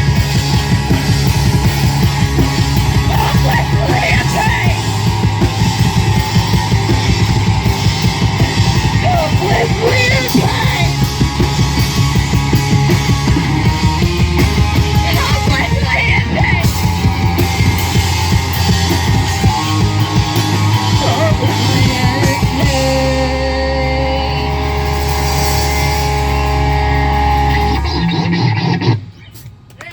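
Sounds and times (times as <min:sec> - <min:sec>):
distorted guitar: 0:00.0 - 0:29.3
rock band playing: 0:00.0 - 0:29.6
drums pounding: 0:00.0 - 0:29.9
shouted vocals: 0:03.0 - 0:04.9, 0:08.9 - 0:11.0, 0:15.0 - 0:16.8, 0:20.9 - 0:24.6.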